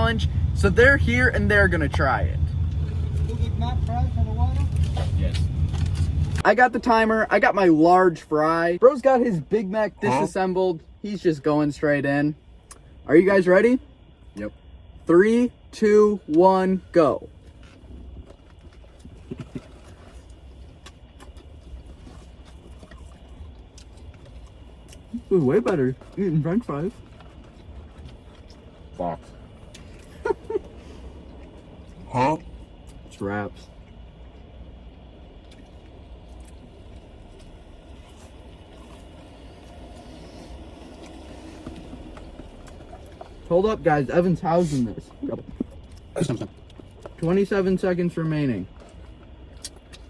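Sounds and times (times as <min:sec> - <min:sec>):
steady low rumble: 0:00.0 - 0:50.0
faint chewing: 0:17.3 - 0:43.5, 0:48.7 - 0:50.0.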